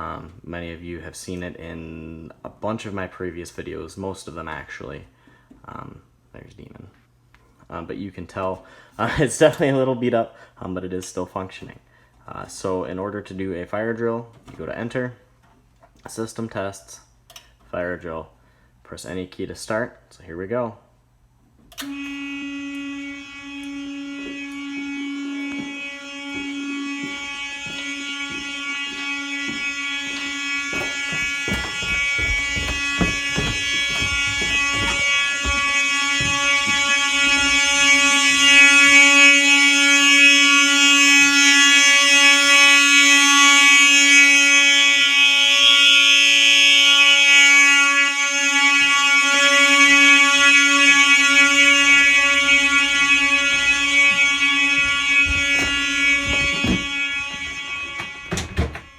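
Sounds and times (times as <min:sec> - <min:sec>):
fire alarm horn buzzing: 0:00.0 - 0:06.9, 0:07.7 - 0:58.9
knocks and thumps: 0:30.7 - 0:37.6, 0:54.7 - 0:58.9.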